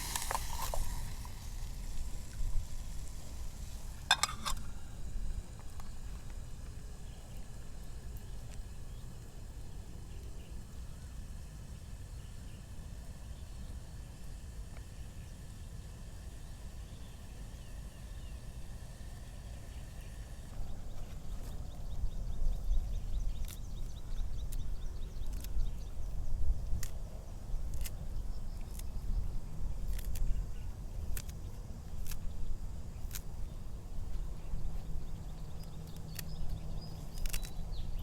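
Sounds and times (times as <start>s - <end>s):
steady low rumble: 0.0s - 10.9s.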